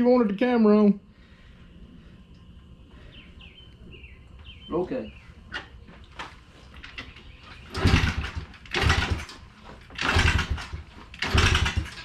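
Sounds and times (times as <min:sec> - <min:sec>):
engine cranking without catching: 0:06.7 - 0:12.0.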